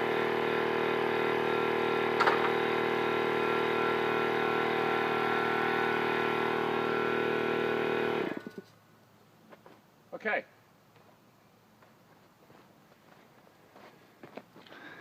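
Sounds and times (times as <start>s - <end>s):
air compressor running: 0.0s - 8.6s.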